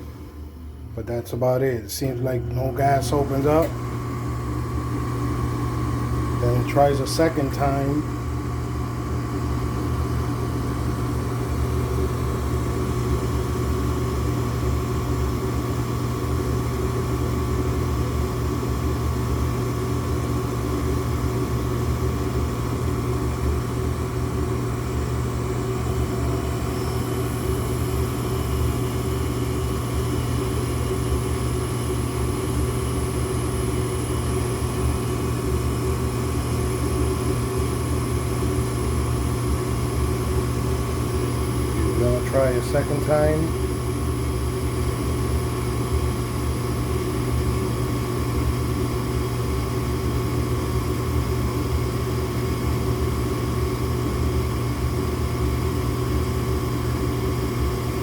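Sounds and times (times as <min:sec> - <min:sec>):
furnace motor hum: 0:00.0 - 0:58.0.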